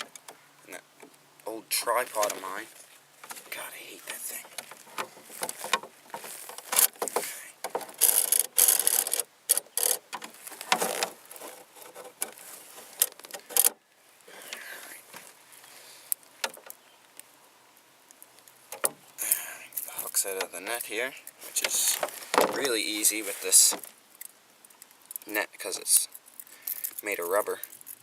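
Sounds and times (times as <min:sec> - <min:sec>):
sharp clicks and knocks: 0:00.0 - 0:00.4, 0:03.2 - 0:12.4, 0:13.0 - 0:13.8, 0:16.4 - 0:17.3, 0:18.4 - 0:19.1, 0:19.8 - 0:20.9
rubbing and rustling of gear: 0:01.5 - 0:16.9, 0:18.5 - 0:24.0.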